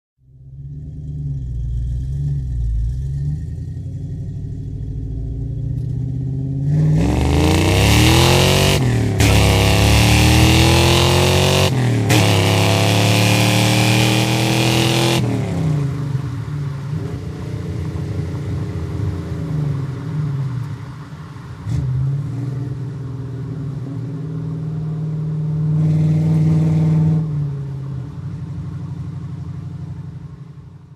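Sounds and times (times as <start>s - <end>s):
car engine accelerating hard: 0.4s - 30.9s.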